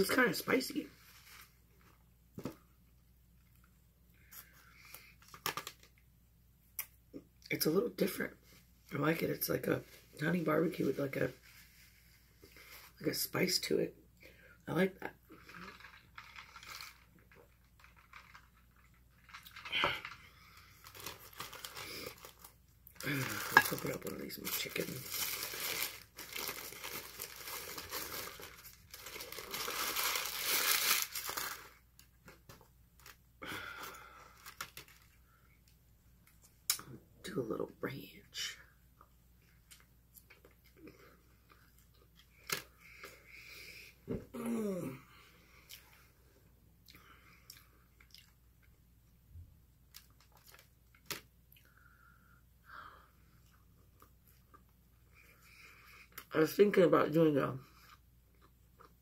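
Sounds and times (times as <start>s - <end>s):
food packaging crinkling and tearing: 4.9s - 6.0s, 15.4s - 35.2s, 49.9s - 51.3s
chewing: 46.8s - 48.7s.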